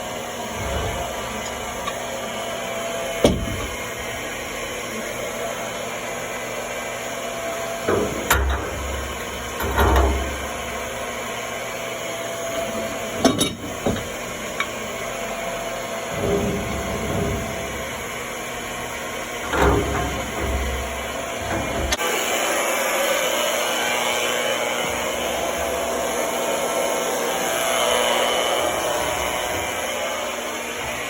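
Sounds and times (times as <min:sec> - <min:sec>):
steady background hum: 0:00.0 - 0:31.0
hand tools knocking and clunking: 0:03.2 - 0:03.8, 0:07.8 - 0:10.9, 0:12.5 - 0:14.9, 0:16.0 - 0:22.0.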